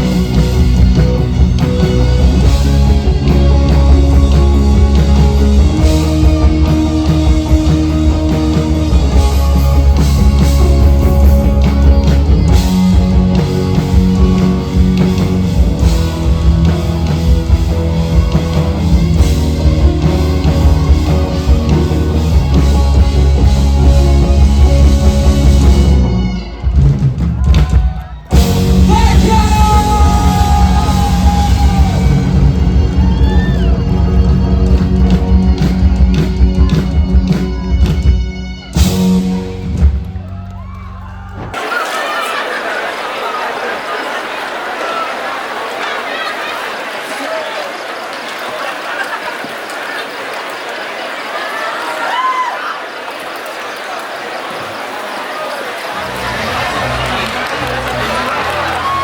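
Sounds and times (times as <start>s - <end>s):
electric guitar: 0.0s - 40.6s
bass notes: 0.0s - 41.5s, 56.0s - 59.0s
drum kit: 0.0s - 41.7s.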